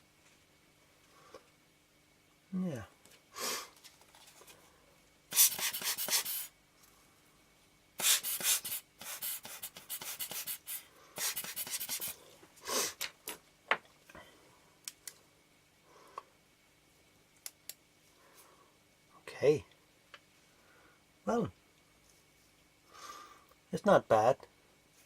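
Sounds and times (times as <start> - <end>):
rubbing and hissing of lens cleaning: 5.3 - 6.6, 8.0 - 13.1.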